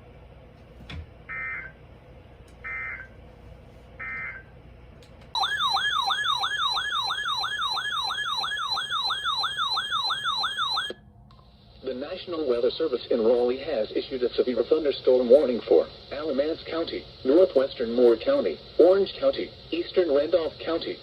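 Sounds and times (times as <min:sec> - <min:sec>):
warbling electronic siren: 0:01.3 - 0:01.8, 0:02.6 - 0:03.2, 0:04.0 - 0:04.5, 0:05.4 - 0:11.0.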